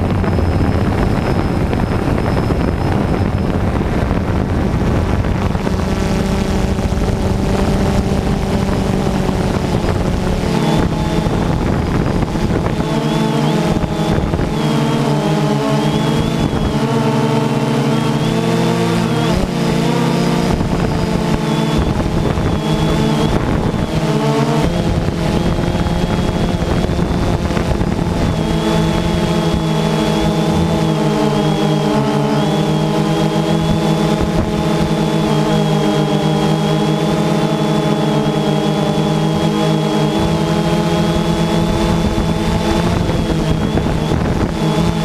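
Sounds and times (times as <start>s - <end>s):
drone propellers whining: 0.0s - 45.0s.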